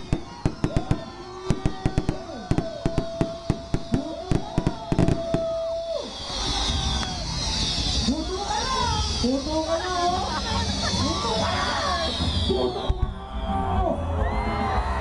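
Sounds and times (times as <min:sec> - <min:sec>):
firecracker bangs: 0:00.0 - 0:08.1
whistling fireworks: 0:00.0 - 0:13.8.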